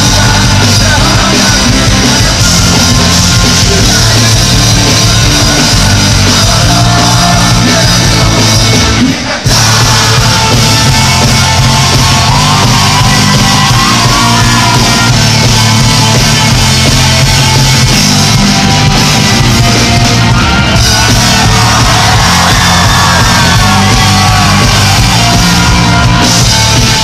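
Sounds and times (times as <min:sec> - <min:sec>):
person singing: 0:00.0 - 0:15.5, 0:20.8 - 0:26.5
live rock music: 0:00.0 - 0:27.0.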